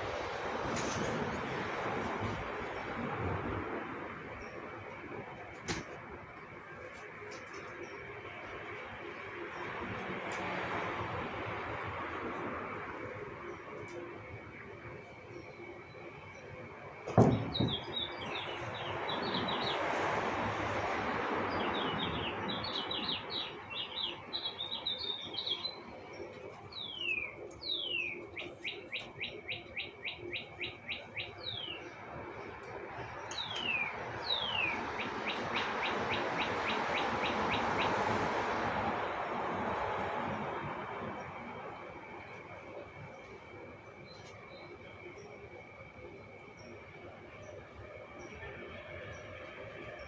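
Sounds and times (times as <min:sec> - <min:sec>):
birds chirping: 0:11.1 - 0:38.2.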